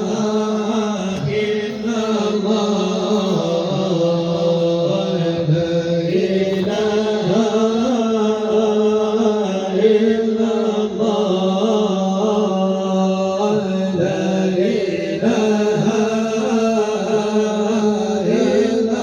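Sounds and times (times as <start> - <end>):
steady drone: 0.0 - 11.8
voices chanting long notes: 0.0 - 19.0.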